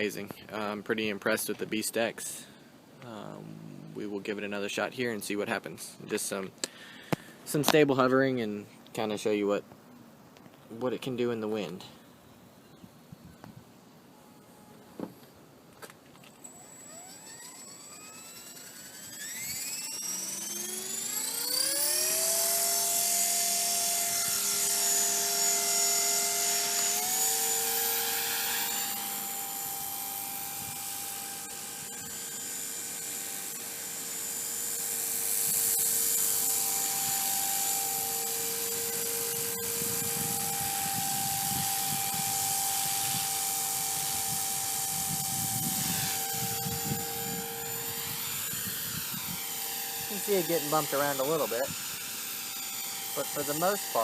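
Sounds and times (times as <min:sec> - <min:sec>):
electric rc helicopter whine: 0:03.2 - 0:04.7, 0:14.2 - 0:54.0.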